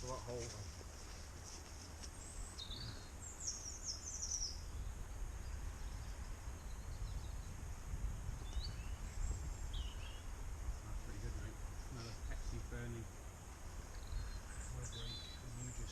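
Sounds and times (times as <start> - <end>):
small bird chirping: 2.1 - 7.6, 8.4 - 10.3, 13.8 - 15.9
steady low rumble: 4.4 - 15.9.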